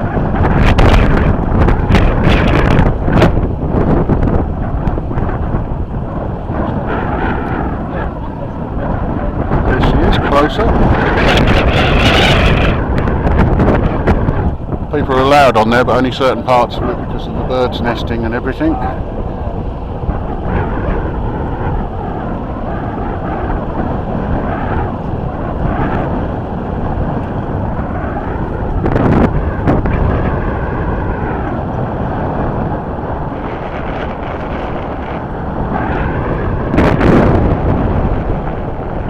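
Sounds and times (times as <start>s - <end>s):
wind buffeting microphone: 0.0s - 39.0s.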